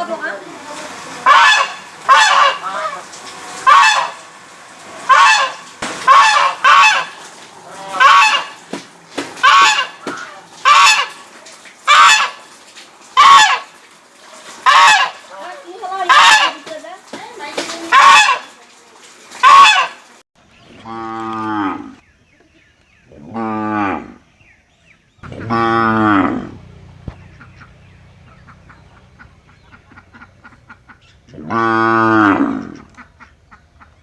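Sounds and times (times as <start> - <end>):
loud honking bird calls: 1.2 - 4.4, 5.0 - 8.7, 9.4 - 12.5, 13.2 - 13.8, 14.6 - 16.7, 17.9 - 18.6, 19.4 - 20.1, 25.2 - 34.0.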